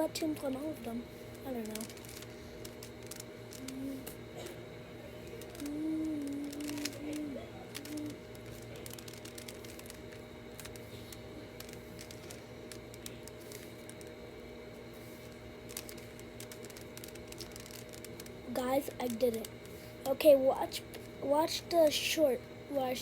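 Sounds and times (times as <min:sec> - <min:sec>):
steady low hum: 0:00.0 - 0:23.0
puzzle cube plastic clicks: 0:05.4 - 0:10.9, 0:15.2 - 0:18.4.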